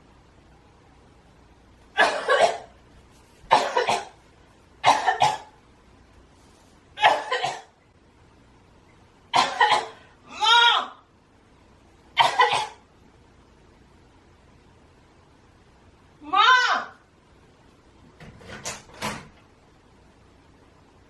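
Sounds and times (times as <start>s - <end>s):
woman coughing: 2.0s - 2.8s, 3.5s - 4.2s, 4.8s - 5.5s, 7.0s - 7.8s, 9.4s - 10.1s, 12.2s - 12.8s.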